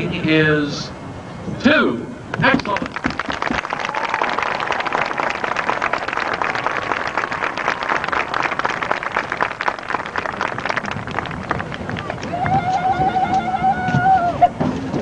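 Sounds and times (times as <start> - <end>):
crowd applauding: 2.4 - 13.4.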